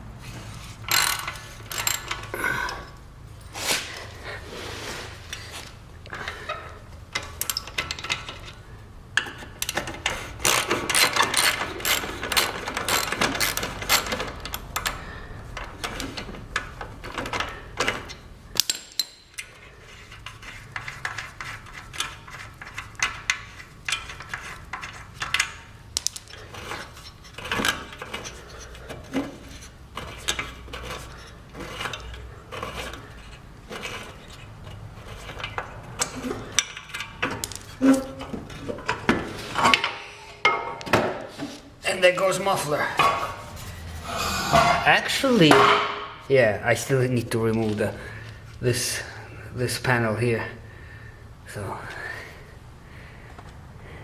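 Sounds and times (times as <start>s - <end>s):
ratchet wrench clicking: 0.9s - 2.3s, 9.6s - 15.0s.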